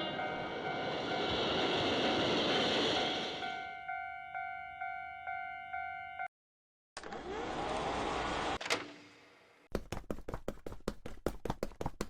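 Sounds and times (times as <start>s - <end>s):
two-tone crossing bell chime: 3.4s - 6.3s.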